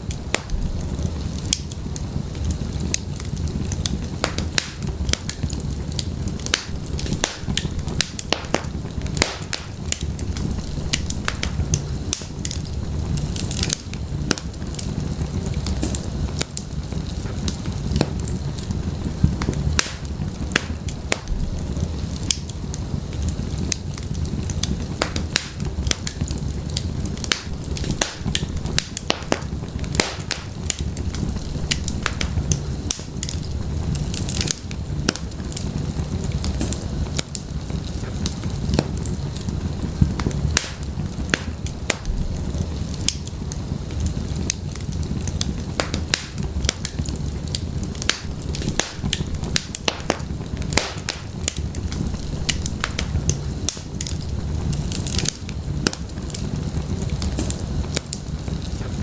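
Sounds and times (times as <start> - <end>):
wood fire crackling: 0.0 - 59.0
wood popping and snapping: 24.6 - 35.6, 45.4 - 56.4.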